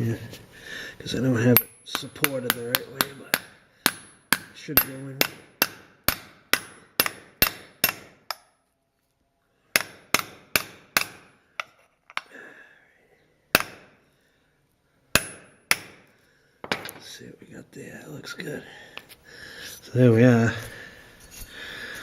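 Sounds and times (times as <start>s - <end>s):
hammer tapping metal: 1.5s - 8.6s, 9.8s - 12.3s, 15.2s - 16.0s.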